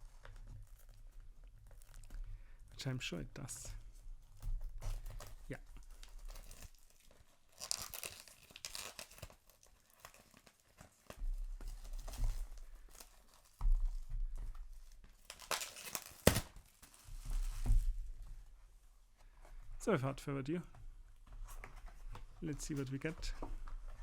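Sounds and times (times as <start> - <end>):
packaging tearing and crinkling: 4.8 - 13.6, 15.2 - 17.8.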